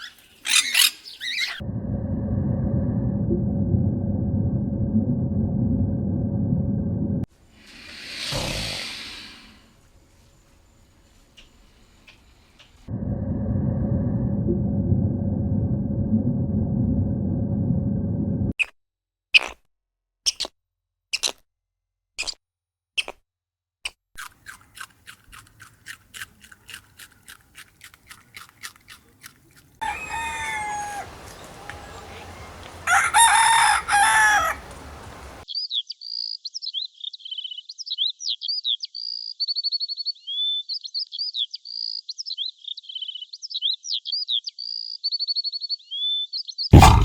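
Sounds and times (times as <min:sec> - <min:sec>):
bird whistling and trilling: 0:00.0 - 0:01.6
rooster crowing: 0:29.8 - 0:35.4.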